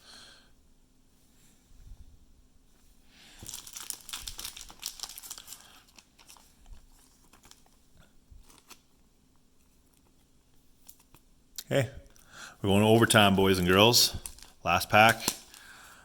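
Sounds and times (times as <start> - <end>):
plastic wrapping crinkling: 3.3 - 8.9, 12.1 - 16.0.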